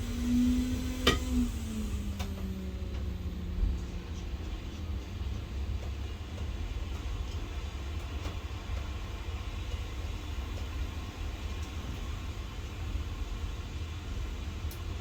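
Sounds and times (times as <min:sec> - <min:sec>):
electric blower motor humming: 0:00.0 - 0:06.0.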